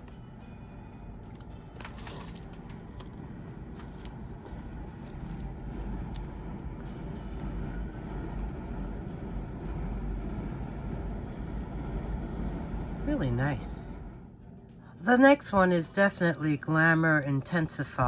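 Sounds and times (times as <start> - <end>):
metal jewelry clinking: 1.9 - 2.9, 4.8 - 8.5, 9.5 - 10.0
low rumble: 2.4 - 14.6.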